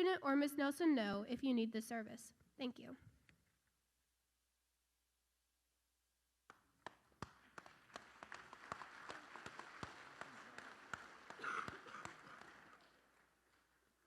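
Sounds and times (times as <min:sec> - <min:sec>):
scattered clapping: 0:06.5 - 0:14.0.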